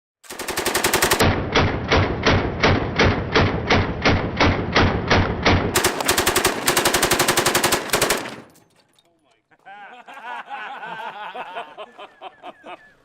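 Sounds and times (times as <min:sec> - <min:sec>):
machine gun firing fast bursts: 0:00.2 - 0:01.2, 0:05.8 - 0:08.5.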